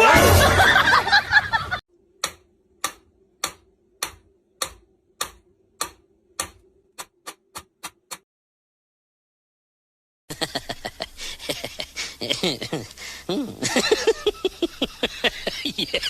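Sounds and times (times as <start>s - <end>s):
faint steady hum: 10.3s - 16.0s.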